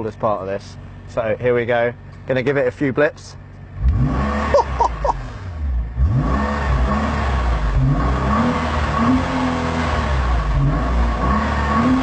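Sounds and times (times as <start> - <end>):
car engine revving: 3.7 - 12.0.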